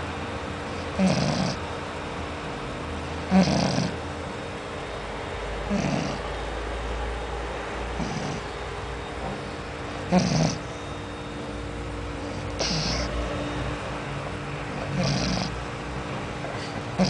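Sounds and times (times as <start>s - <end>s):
pet snoring: 0.7s - 1.6s, 3.2s - 4.0s, 5.7s - 6.3s, 7.9s - 8.5s, 10.0s - 10.7s, 12.2s - 13.2s, 14.7s - 15.6s, 16.4s - 17.0s.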